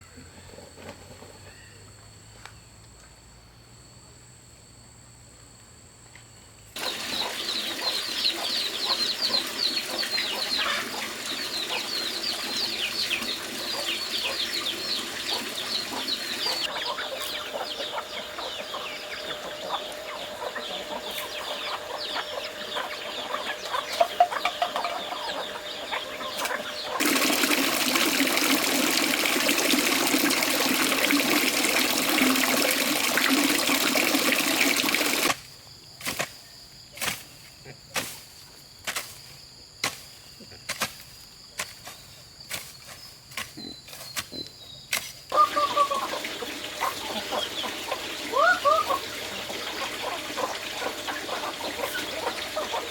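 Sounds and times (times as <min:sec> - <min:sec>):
poultry chirping and clucking: 0:06.8 - 0:35.3, 0:43.4 - 0:44.7, 0:45.3 - 0:52.9.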